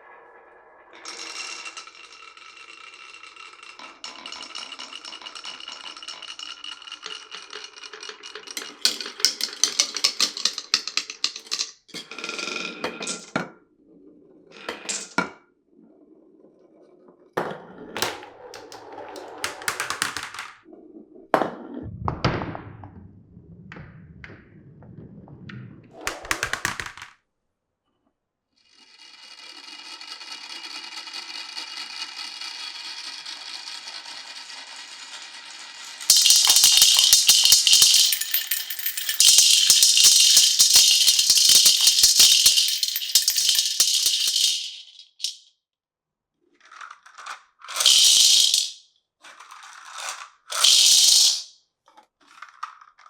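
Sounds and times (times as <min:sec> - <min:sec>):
marbles rolling on wooden run: 0:00.8 - 0:13.4, 0:14.6 - 0:15.4, 0:17.4 - 0:20.7, 0:25.0 - 0:27.1, 0:28.8 - 0:45.4, 0:46.6 - 0:51.5
marbles clicking and knocking: 0:01.0 - 0:12.1, 0:17.4 - 0:20.6, 0:23.7 - 0:27.1, 0:35.6 - 0:45.4, 0:47.7 - 0:48.8, 0:50.0 - 0:51.5.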